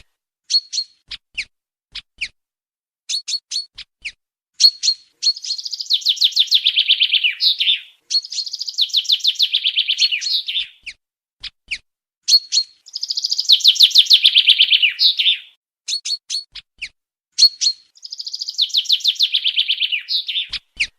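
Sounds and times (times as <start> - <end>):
bird singing trilled song: 0.0 - 1.5, 3.1 - 20.9
bird call notes: 5.2 - 10.8, 12.9 - 15.5, 17.6 - 20.6.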